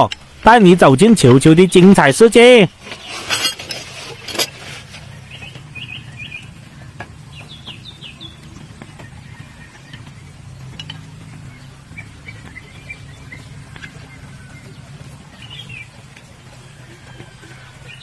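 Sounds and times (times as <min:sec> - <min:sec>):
small birds chirping: 0:00.0 - 0:18.0
knocks and rustles: 0:02.7 - 0:05.8, 0:06.6 - 0:12.7.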